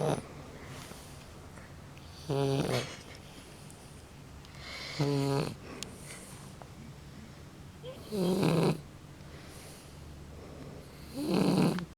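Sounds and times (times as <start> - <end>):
puppy snoring: 0.0 - 0.4, 2.0 - 3.0, 4.6 - 5.7, 7.8 - 8.9, 10.8 - 11.9
quiet breathing: 0.2 - 2.3, 3.2 - 7.6, 9.2 - 11.2.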